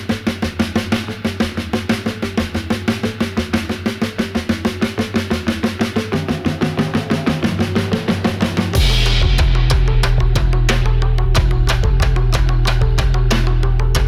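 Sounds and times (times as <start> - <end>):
fast driving drums: 0.0 - 14.0
bass line: 6.0 - 14.0.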